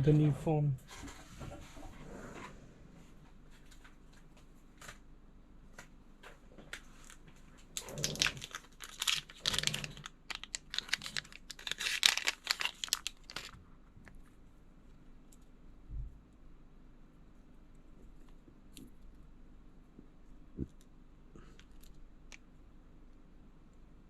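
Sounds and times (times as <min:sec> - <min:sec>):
plastic crinkling and rustling: 0:06.7 - 0:14.2.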